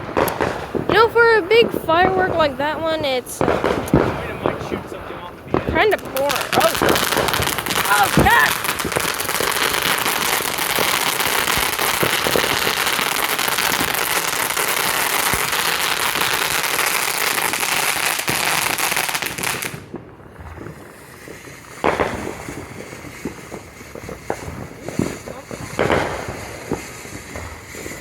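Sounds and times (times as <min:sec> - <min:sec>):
firework fountain hissing and crackling: 0:00.0 - 0:28.0
sharp pop: 0:00.2 - 0:01.0, 0:03.4 - 0:04.3.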